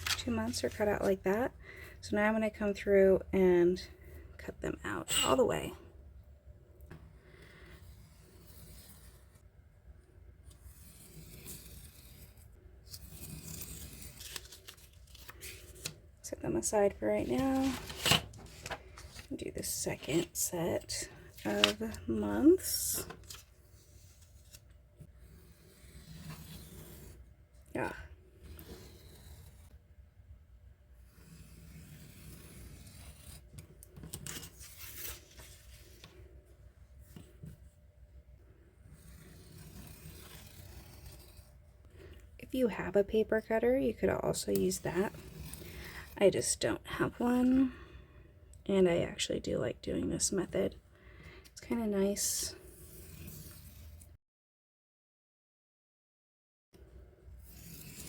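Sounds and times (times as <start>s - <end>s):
knife slicing paper along ruler: 7.9s - 9.2s, 10.5s - 15.9s, 25.2s - 27.2s, 28.4s - 29.8s, 31.1s - 36.0s, 38.9s - 41.5s, 57.4s - 58.0s.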